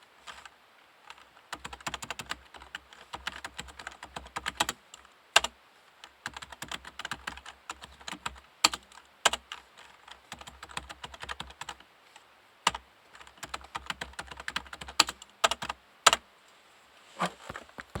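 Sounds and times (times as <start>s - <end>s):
typing on a keyboard: 1.1s - 11.8s, 12.7s - 16.2s.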